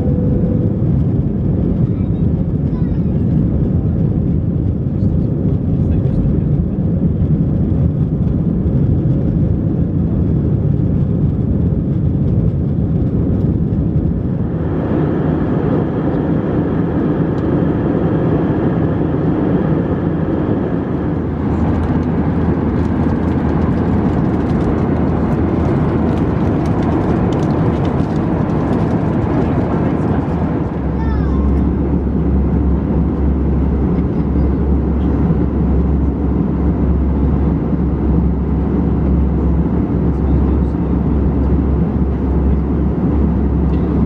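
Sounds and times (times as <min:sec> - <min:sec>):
aircraft cabin engine roar: 0:00.0 - 0:44.0.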